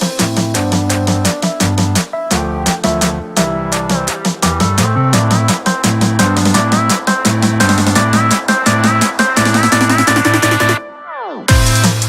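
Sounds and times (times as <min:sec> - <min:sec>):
electronic dance music: 0:00.0 - 0:12.0.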